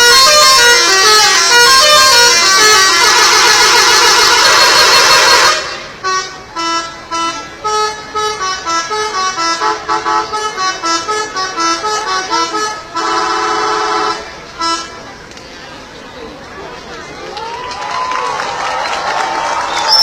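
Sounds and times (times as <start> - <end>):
multi-tone bus horn tune: 0.0 - 15.2.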